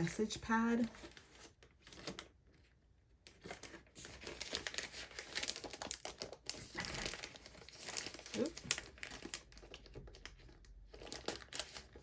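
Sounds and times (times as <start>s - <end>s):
packaging crinkling: 3.3s - 12.0s.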